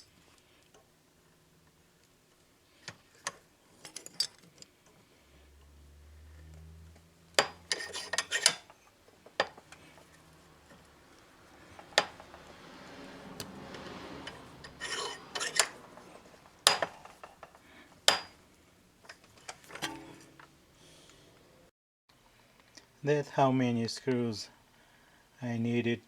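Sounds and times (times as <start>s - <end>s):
soft scraping: 4.8s - 21.7s.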